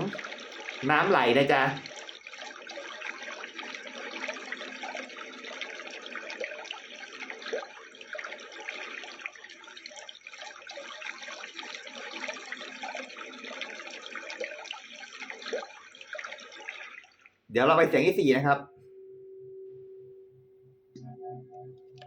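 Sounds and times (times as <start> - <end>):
trickling water from speaker: 0.0 - 17.4.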